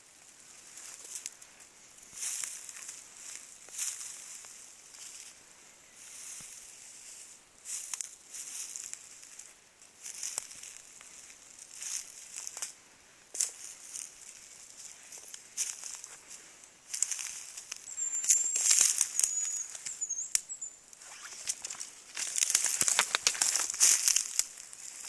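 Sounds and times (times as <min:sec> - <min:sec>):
rustling in dry leaf litter: 0:06.0 - 0:25.0.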